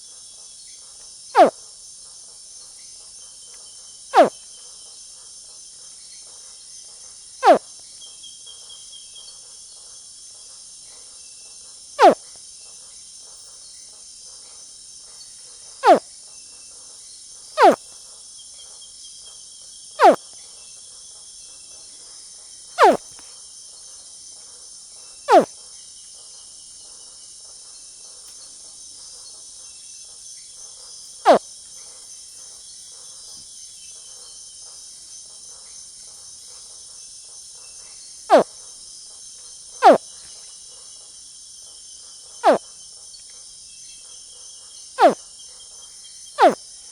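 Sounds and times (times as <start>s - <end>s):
crickets chirping: 0.6s - 2.0s, 3.4s - 4.5s, 7.4s - 7.6s, 12.0s - 12.2s, 15.3s - 16.1s, 17.0s - 18.0s, 19.1s - 20.2s, 22.2s - 23.1s, 23.8s - 27.7s, 29.8s - 46.9s
young crocodile chirping calls: 22.8s - 23.0s.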